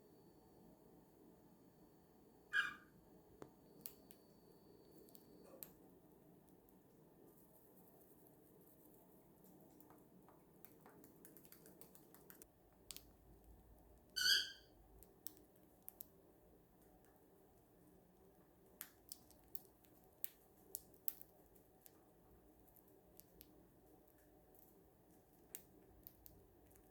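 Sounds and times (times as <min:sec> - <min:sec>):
cockatiel chirp: 0:02.5 - 0:02.9, 0:14.1 - 0:14.7
bird beak clicks and cracks: 0:10.6 - 0:13.1, 0:18.8 - 0:22.0.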